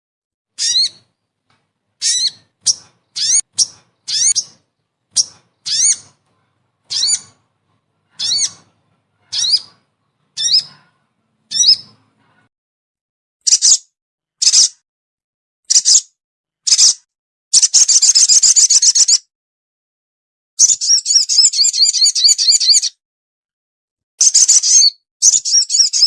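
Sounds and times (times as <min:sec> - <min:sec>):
rapid chattering bird trill: 0:00.6 - 0:01.1, 0:02.0 - 0:12.0
sharp bird calls: 0:00.6 - 0:01.2, 0:02.0 - 0:12.0, 0:24.2 - 0:26.0.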